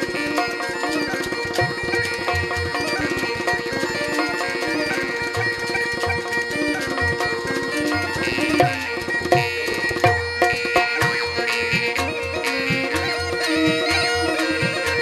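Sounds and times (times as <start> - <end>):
fast hand-drum strokes: 4.0 - 5.4, 14.0 - 15.0
steady drone: 4.0 - 5.4, 14.3 - 15.0.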